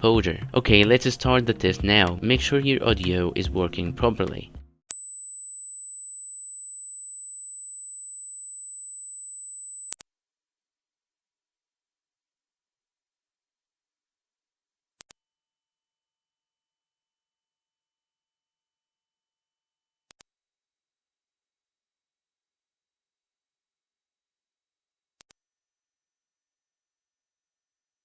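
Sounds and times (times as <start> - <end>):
sine wave test tones: 4.9 - 20.2.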